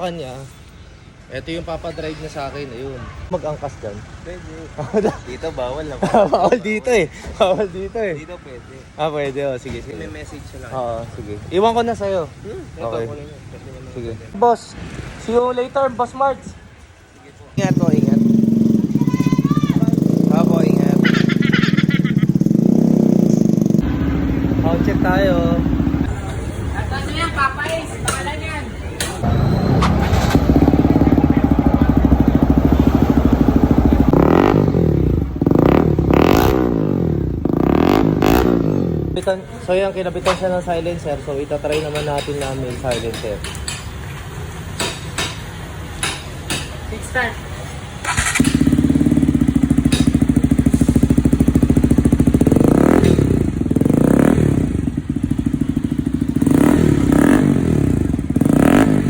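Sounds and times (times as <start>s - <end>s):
motorcycle engine revving: 17.6s - 26.2s, 29.2s - 39.4s, 47.9s - 59.0s
motorcycle engine idling: 17.6s - 26.9s, 29.2s - 39.3s, 48.0s - 59.0s.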